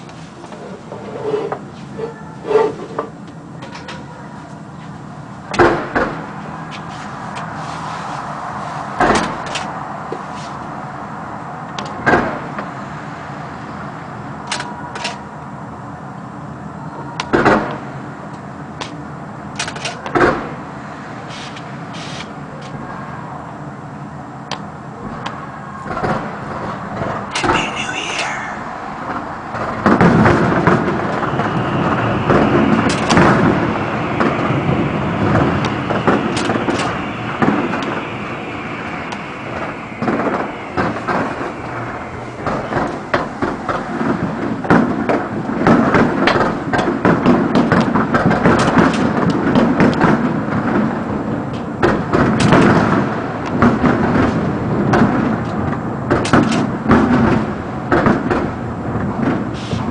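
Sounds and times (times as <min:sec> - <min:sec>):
continuous rumble: 0:00.0 - 0:59.9
fireworks booming and cracking: 0:05.5 - 0:06.6, 0:11.9 - 0:13.6, 0:17.3 - 0:18.1, 0:20.1 - 0:21.8, 0:25.8 - 0:59.9.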